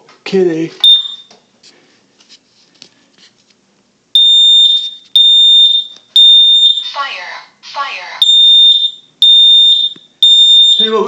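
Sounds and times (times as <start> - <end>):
smoke alarm beeping: 0.8 - 1.4, 4.1 - 7.1, 8.2 - 11.0.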